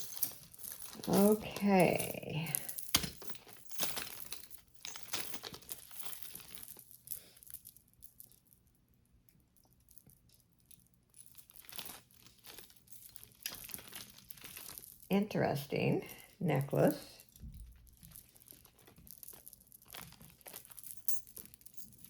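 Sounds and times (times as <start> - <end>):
plastic bag crinkling: 11.4 - 15.1, 17.2 - 22.0.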